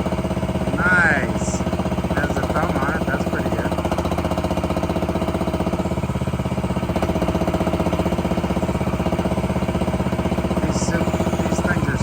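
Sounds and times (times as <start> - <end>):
mini excavator engine running: 0.0 - 12.0.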